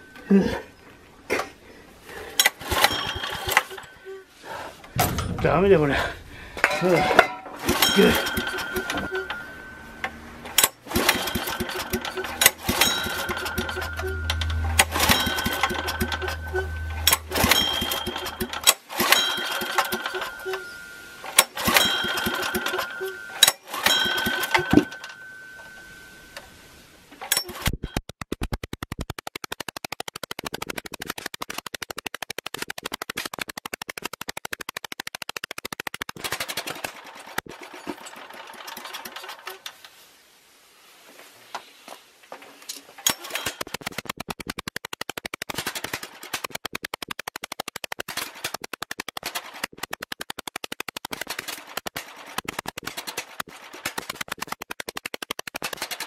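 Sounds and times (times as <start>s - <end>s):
small generator engine running: 7.6s - 25.1s.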